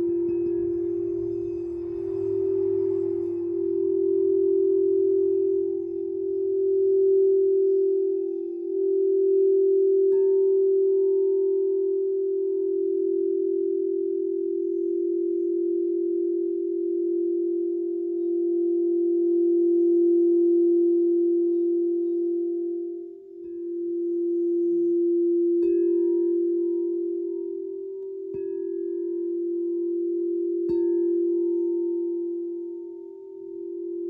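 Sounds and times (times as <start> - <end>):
singing bowl low tone: 0.0 - 34.0.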